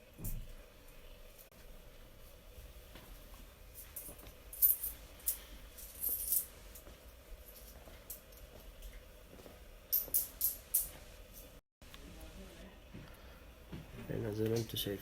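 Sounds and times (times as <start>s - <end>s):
faint steady hum: 0.0s - 15.0s
light clinks and rattles: 3.7s - 9.0s, 9.9s - 11.6s.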